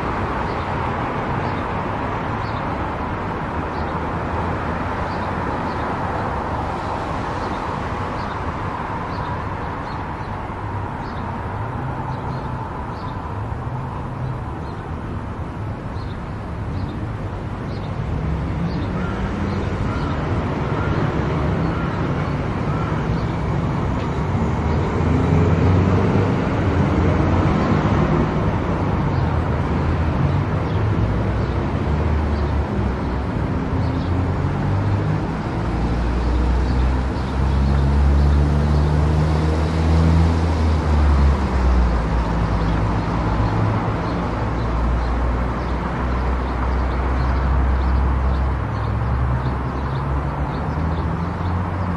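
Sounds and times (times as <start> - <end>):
road and tyre noise: 0.0 - 51.9.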